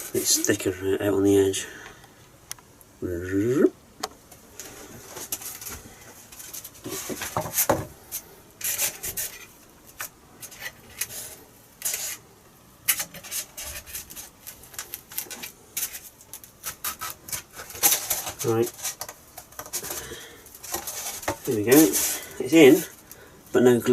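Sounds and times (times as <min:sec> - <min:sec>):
spar scraping against foam: 0:04.7 - 0:12.2, 0:12.9 - 0:23.0.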